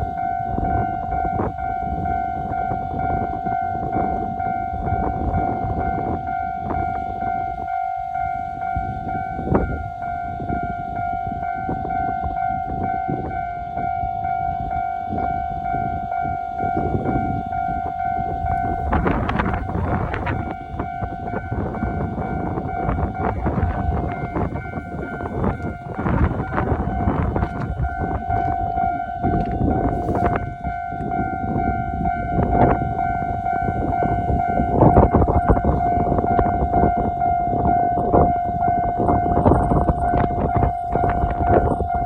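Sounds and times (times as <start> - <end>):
level crossing bell ringing: 0.0 - 42.0
train wheels rumbling and clacking: 15.8 - 42.0.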